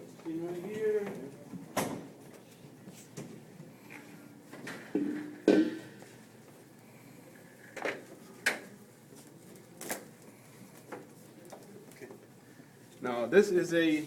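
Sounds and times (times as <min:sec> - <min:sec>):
hard objects knocking and clattering: 0:04.6 - 0:06.0.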